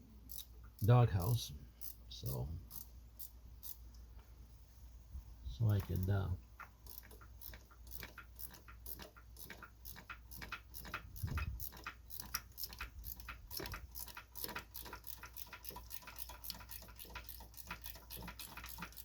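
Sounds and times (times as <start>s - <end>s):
ratchet wrench clicking: 0.3s - 0.8s, 1.8s - 2.0s, 2.7s - 3.8s, 5.8s - 19.0s.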